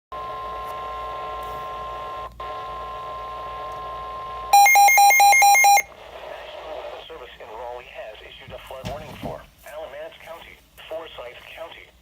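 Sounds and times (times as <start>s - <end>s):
steady warning alarm tone: 0.9s - 5.9s.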